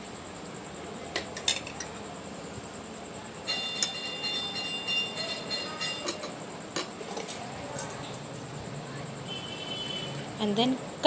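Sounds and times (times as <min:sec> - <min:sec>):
utensils clinking on dishware: 0:01.2 - 0:02.0, 0:03.5 - 0:08.5
dish ringing: 0:03.4 - 0:07.0.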